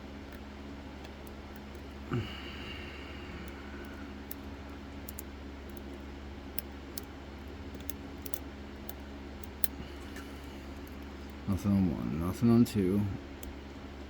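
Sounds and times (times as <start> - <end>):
steady low hum: 0.0 - 14.0
metallic ticks of lock pick: 7.7 - 9.8.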